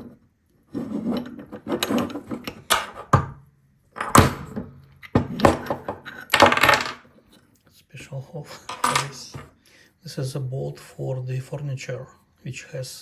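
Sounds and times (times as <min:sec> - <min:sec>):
metal parts rattling and scraping: 0:00.8 - 0:03.1, 0:08.6 - 0:09.5.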